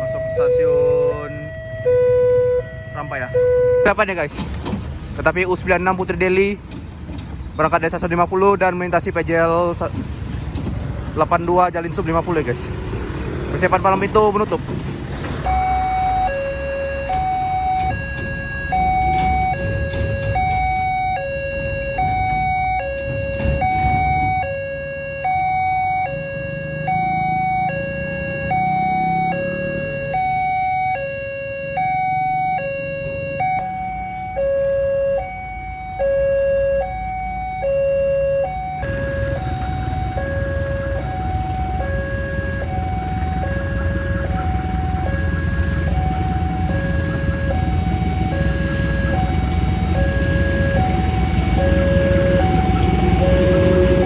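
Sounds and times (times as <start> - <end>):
two-tone level crossing siren: 0.0 - 4.1, 15.1 - 54.0
low rumble: 9.9 - 19.0, 38.8 - 41.8.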